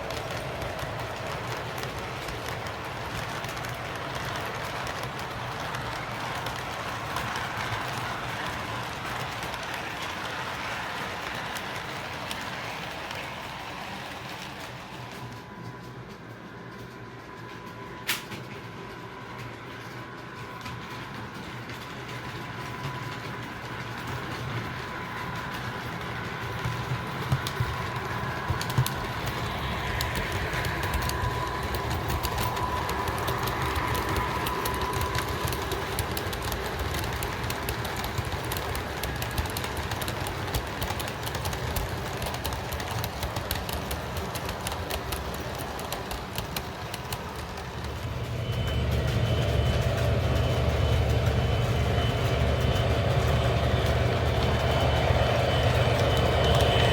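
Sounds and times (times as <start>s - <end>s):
wheels clicking on track: 0.0s - 56.9s.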